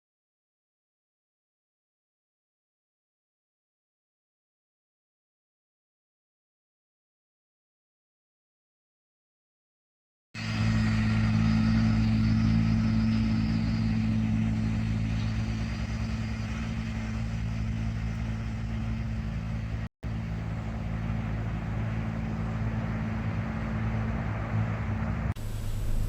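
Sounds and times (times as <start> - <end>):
engine running steadily: 10.4 - 26.0.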